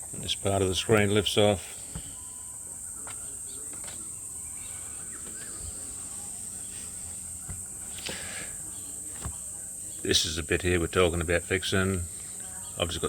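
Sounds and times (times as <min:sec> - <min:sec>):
high-pitched insect chorus: 0:00.0 - 0:13.0.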